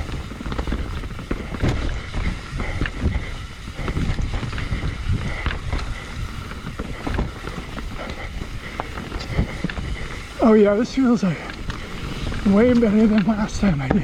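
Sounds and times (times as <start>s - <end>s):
wind on microphone: 0.0s - 10.8s
bike rattling: 0.0s - 14.0s
brakes squealing: 0.0s - 14.0s
tyres rumbling over rocks: 0.0s - 14.0s.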